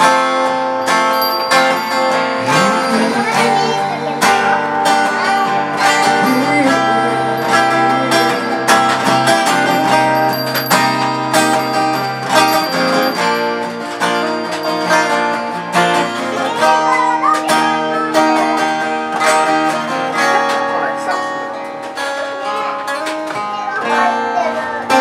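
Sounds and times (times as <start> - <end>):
guitar playing chords: 0.0 - 25.0.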